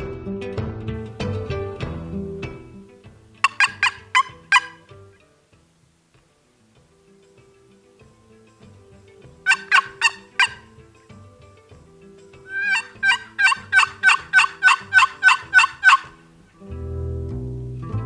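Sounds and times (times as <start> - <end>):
faint music: 0.0 - 18.0
turkey calling: 3.4 - 5.0, 9.4 - 10.8, 12.5 - 16.3.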